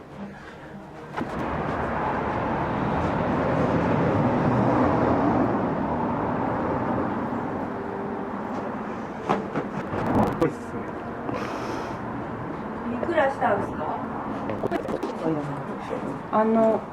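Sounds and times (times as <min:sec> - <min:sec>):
vehicle passing by: 0:01.2 - 0:16.4.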